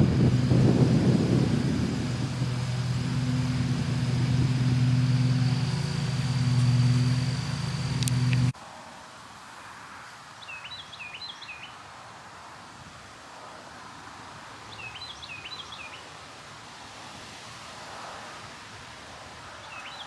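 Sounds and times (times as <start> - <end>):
loud low rumble: 0.0 - 8.5
breeze rustling tree leaves: 0.0 - 11.6.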